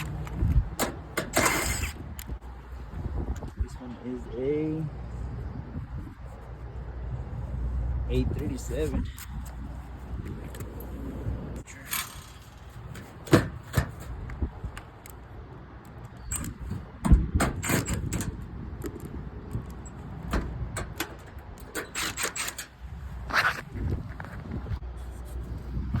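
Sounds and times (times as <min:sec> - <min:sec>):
metal panels clicking and rattling: 0:00.0 - 0:02.3, 0:11.6 - 0:14.3, 0:16.2 - 0:22.9
low steady rumble: 0:00.0 - 0:13.0.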